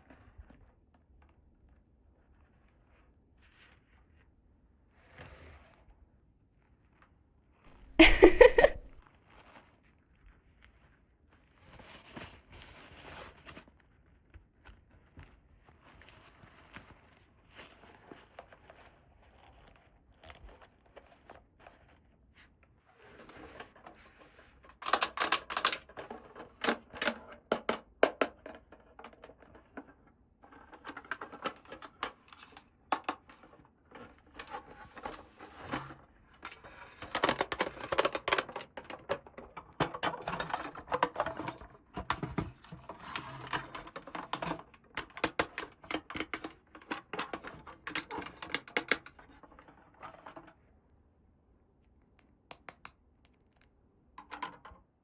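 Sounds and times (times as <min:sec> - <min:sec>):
plastic toy parts clicking: 0:52.2 - 0:54.7.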